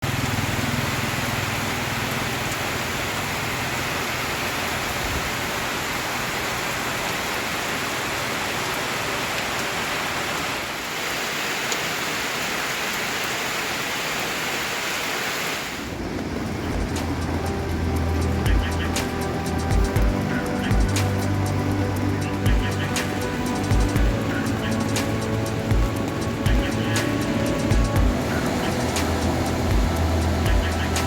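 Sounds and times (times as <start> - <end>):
steady hiss: 10.8 - 31.0.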